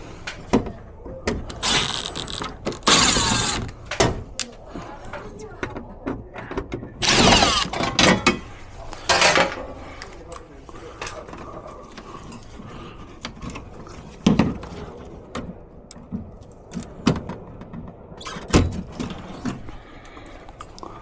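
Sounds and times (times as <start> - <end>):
tools and parts clicking: 1.5 - 5.2, 7.0 - 8.3, 10.0 - 11.4, 15.4 - 17.0.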